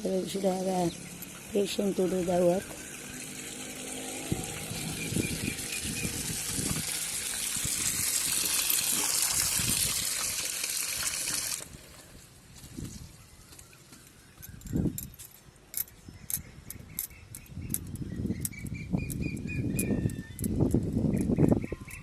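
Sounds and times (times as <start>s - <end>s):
water gushing from hose: 0.2s - 12.3s.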